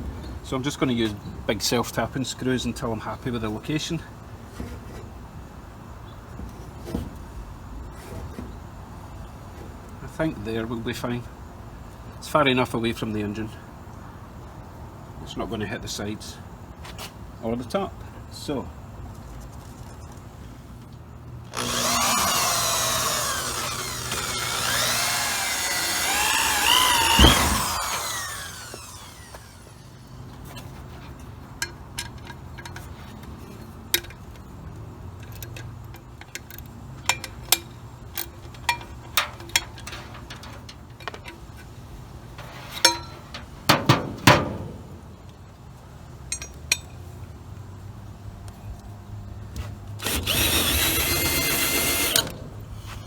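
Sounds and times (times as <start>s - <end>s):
screw seating hit: 21.5s - 29.9s, 42.4s - 45.1s
power drill whining: 21.5s - 30.2s, 50.0s - 52.3s
loud knocks: 23.5s - 29.1s.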